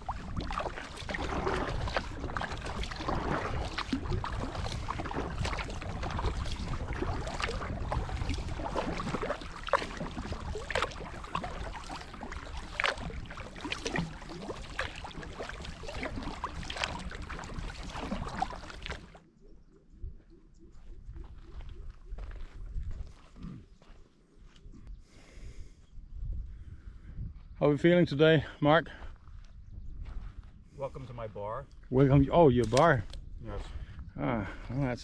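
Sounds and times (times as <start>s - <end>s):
paddle splashing in water: 0.0s - 19.3s
wind on microphone: 0.0s - 23.8s, 24.6s - 27.6s, 29.0s - 35.0s.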